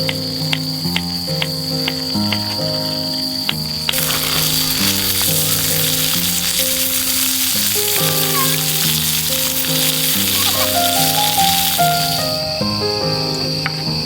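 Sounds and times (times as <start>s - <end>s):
background music: 0.0s - 14.0s
food sizzling in a hot pan: 3.9s - 12.5s.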